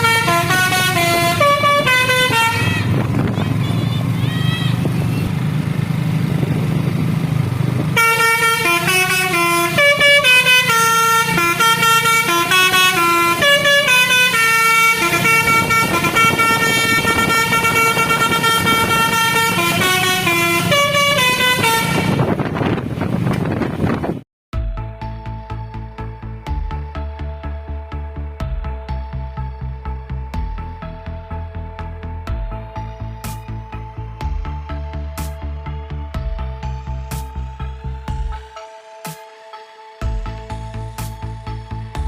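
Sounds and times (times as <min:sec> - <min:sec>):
bus horn playing melody: 0:00.0 - 0:05.5, 0:07.8 - 0:22.5
bus engine low rumble: 0:00.0 - 0:42.0.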